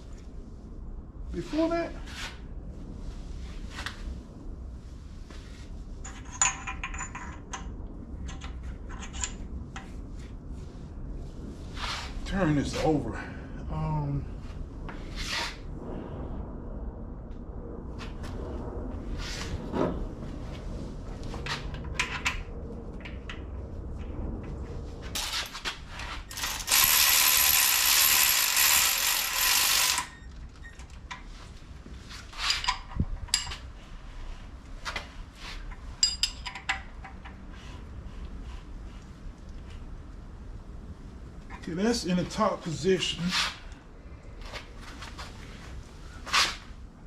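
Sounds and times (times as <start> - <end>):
hand ratchet clicking: 26.3 - 30.2.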